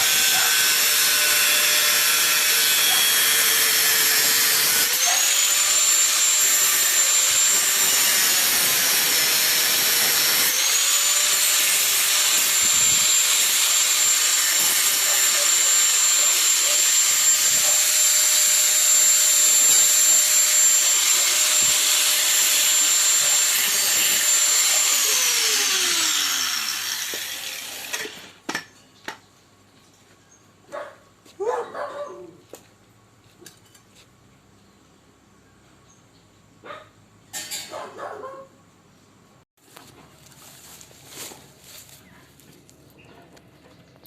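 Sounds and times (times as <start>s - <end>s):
power tool whining: 0.0s - 28.4s.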